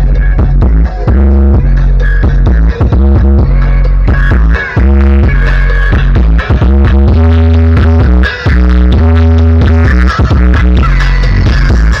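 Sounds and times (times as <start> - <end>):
loud electronic dance music: 0.0 - 12.0.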